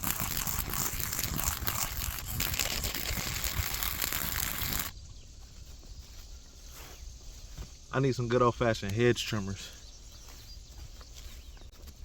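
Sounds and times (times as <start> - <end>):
dry brush crackling and snapping: 0.0 - 4.9.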